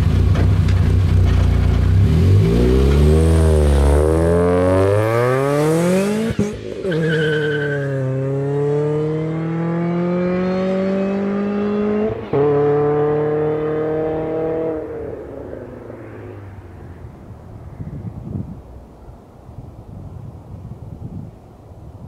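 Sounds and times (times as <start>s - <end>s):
car engine accelerating hard: 0.0s - 16.6s.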